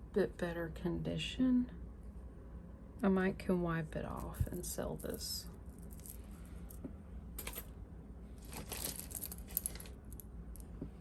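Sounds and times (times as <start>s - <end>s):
jewelry clinking and rattling: 4.2s - 6.8s, 7.4s - 7.7s, 8.4s - 10.7s
rustling: 8.4s - 10.0s.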